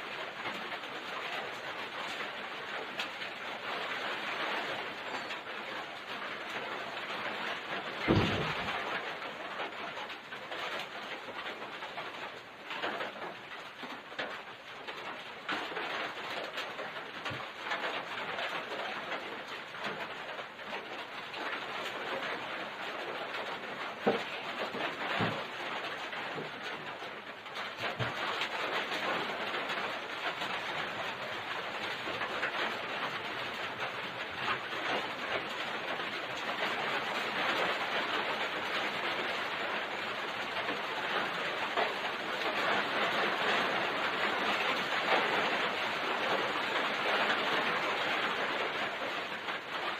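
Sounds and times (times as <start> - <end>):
sharp knock: 8.1 - 8.8.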